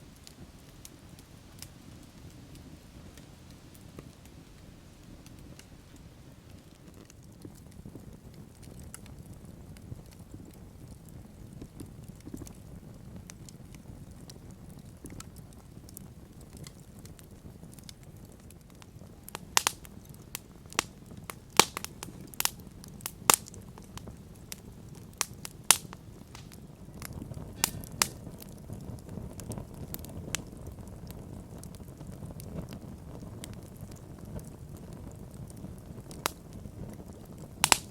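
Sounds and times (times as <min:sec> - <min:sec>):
campfire crackling: 0:00.0 - 0:37.9
low rumble of flames: 0:00.0 - 0:37.9
wood popping: 0:27.6 - 0:28.4, 0:37.2 - 0:37.9.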